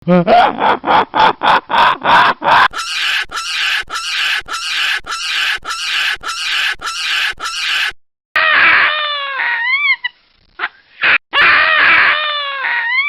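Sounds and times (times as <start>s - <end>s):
baboon screaming call: 2.5s - 10.1s, 11.4s - 13.0s.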